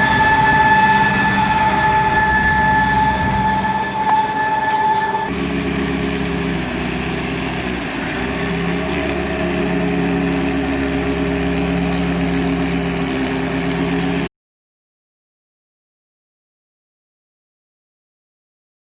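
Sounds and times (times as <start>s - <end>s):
tractor engine running: 0.0s - 14.3s.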